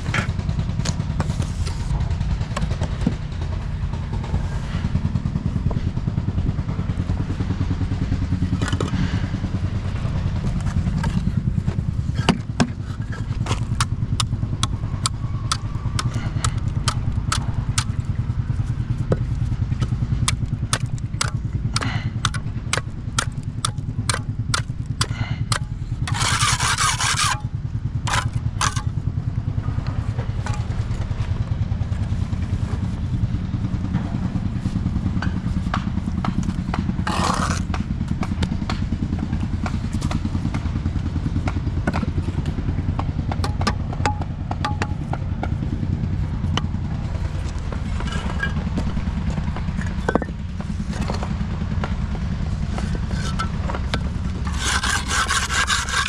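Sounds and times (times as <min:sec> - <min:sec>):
engine rumbling: 0:00.0 - 0:56.0
sharp clicks and knocks: 0:28.1 - 0:28.9.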